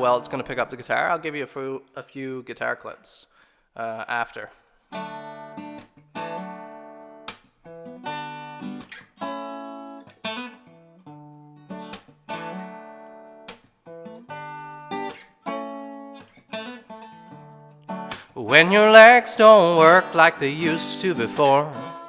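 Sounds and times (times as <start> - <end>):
acoustic guitar strumming chords: 14.3 - 22.0.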